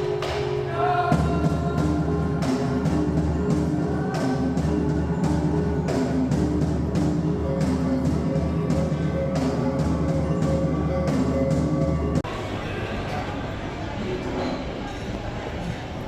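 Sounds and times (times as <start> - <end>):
background music with steady beat: 0.0 - 12.3.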